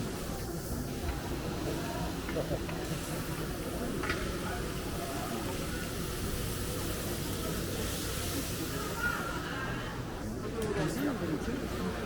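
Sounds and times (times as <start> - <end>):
faint indistinct voices: 0.0 - 12.0.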